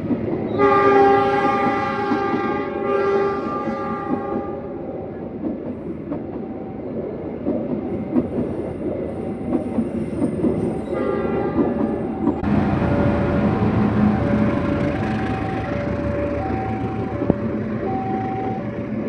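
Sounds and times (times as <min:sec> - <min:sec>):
train horn: 0:00.5 - 0:04.8, 0:10.9 - 0:11.8
train wheels clattering: 0:07.3 - 0:12.5.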